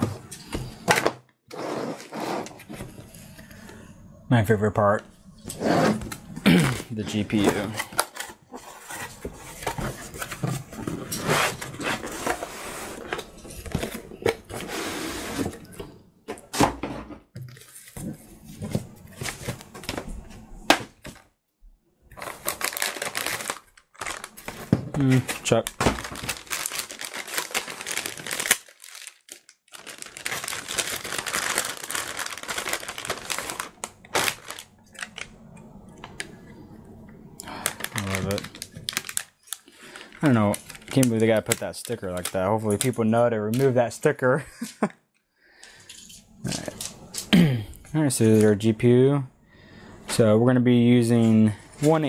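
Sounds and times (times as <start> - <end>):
rubbing and scraping handling: 6.8 - 15.8
packaging crinkling and rustling: 22.1 - 35.4, 37.4 - 43.9.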